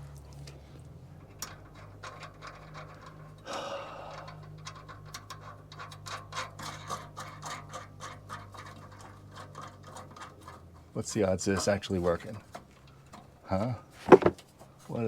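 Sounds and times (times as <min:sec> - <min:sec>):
hand tools clicking and scraping: 0:00.0 - 0:15.0.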